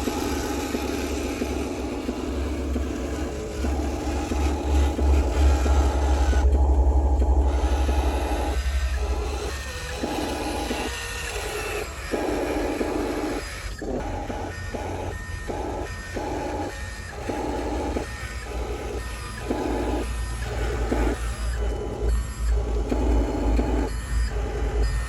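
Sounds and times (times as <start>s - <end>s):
electric motors whirring: 0.0s - 25.0s
steady low hum: 0.0s - 25.0s.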